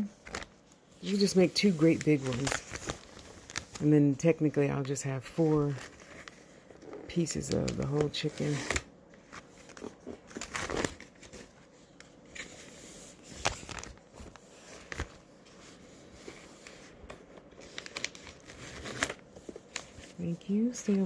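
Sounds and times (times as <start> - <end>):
plastic bag crinkling: 0.0 - 11.7, 16.6 - 21.0.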